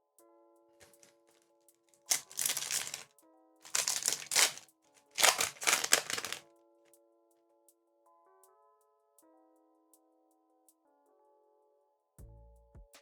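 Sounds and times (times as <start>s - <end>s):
foil wrapper crinkling and tearing: 0.8s - 1.0s, 2.1s - 6.4s
soft background music: 6.5s - 13.0s.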